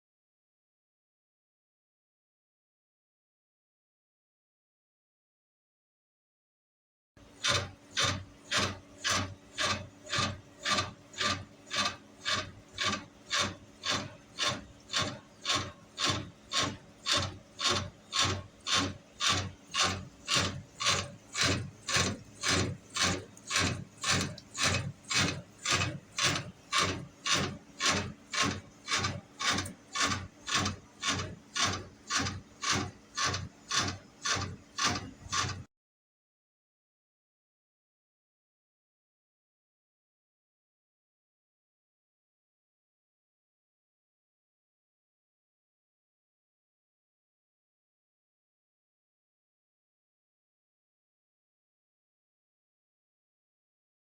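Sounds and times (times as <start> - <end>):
tool rasping back and forth: 7.4 - 35.7.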